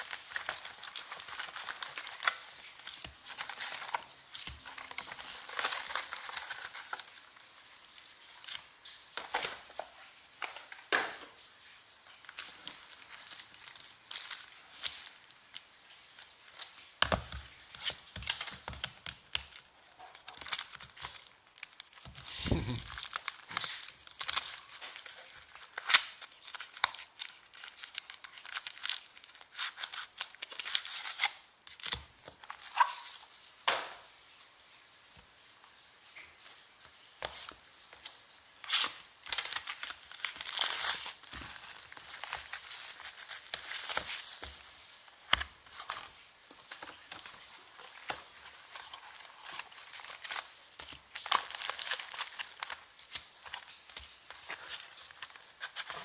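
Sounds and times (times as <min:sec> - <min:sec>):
plastic wrapping tearing and crinkling: 0:00.0 - 0:56.0.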